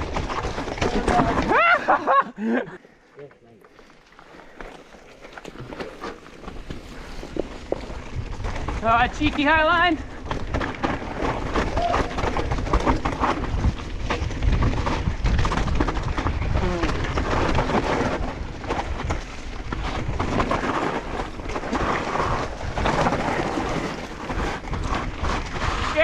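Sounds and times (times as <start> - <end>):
bike rattling and knocking: 0.0 - 1.9, 3.7 - 26.0
tyres rolling and skidding on dirt: 0.0 - 2.2, 3.7 - 26.0
wind rumble on microphone: 10.2 - 26.0.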